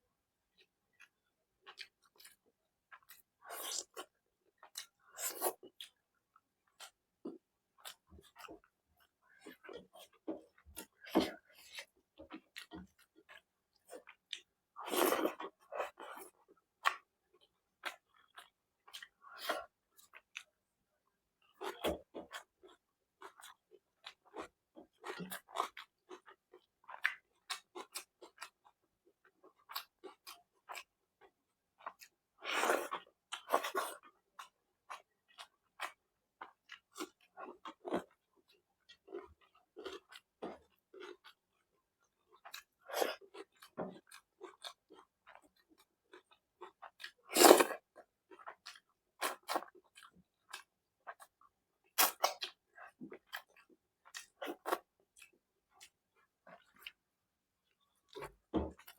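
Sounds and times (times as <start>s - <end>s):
person chewing and lip-smacking: 29.5s - 30.9s, 31.8s - 57.0s.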